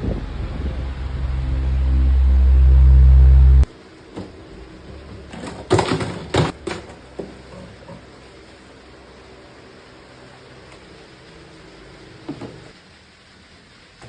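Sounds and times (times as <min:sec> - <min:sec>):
loud low hum: 0:00.0 - 0:05.3.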